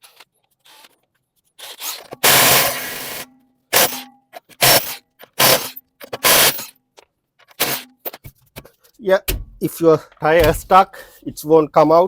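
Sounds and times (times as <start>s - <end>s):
impact wrench bursts: 1.6s - 6.8s, 7.5s - 7.9s.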